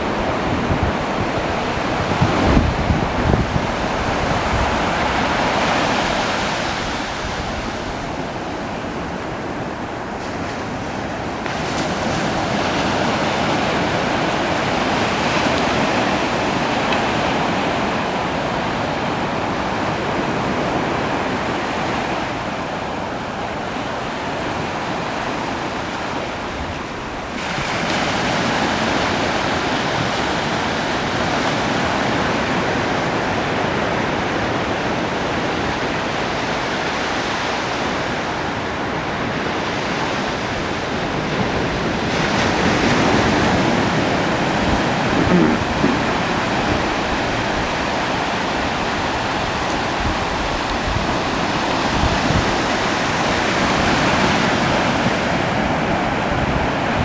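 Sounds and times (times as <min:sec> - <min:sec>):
ocean surf breaking: 0:27.3 - 0:57.0.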